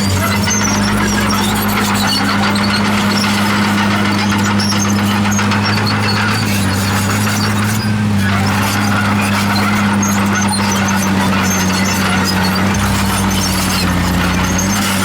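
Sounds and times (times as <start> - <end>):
bulldozer diesel engine: 0.0 - 15.0
steel tracks squeaking and rattling: 0.0 - 15.0.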